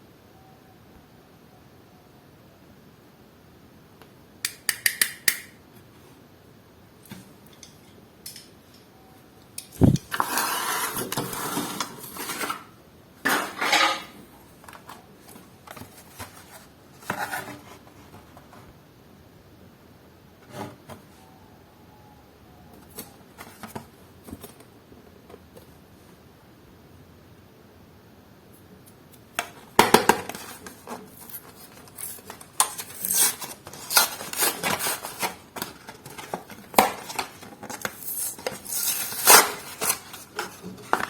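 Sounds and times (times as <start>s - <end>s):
packaging rustling and scraping: 10.0s - 18.8s, 29.4s - 41.0s.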